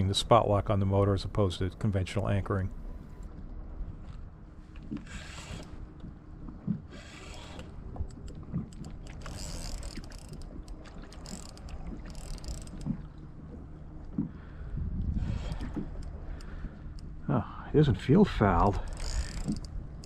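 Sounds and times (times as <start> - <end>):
low steady hum: 0.0 - 20.0
fishing reel whirring: 5.0 - 5.8, 6.9 - 7.8, 9.1 - 10.5, 11.1 - 12.9, 18.7 - 20.0.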